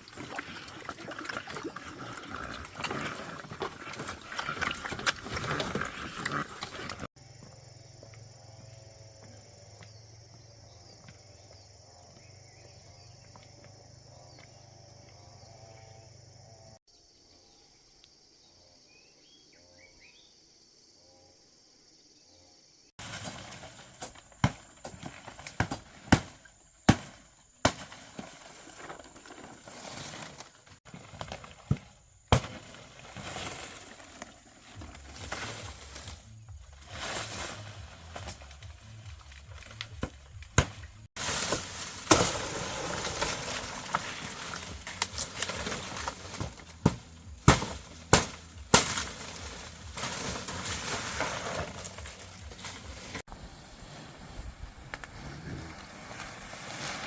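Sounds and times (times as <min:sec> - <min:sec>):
faint outdoor ambience: 0:00.0 - 0:57.0
sharp knocks and cracks: 0:23.0 - 0:28.3, 0:39.2 - 0:52.8.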